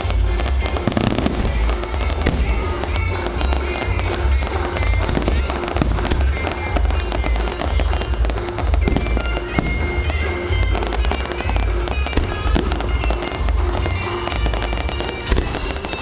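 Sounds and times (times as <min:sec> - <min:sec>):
fireworks crackling pops: 0:00.0 - 0:16.0
fireworks deep booms: 0:00.0 - 0:16.0
music playing: 0:00.0 - 0:16.0.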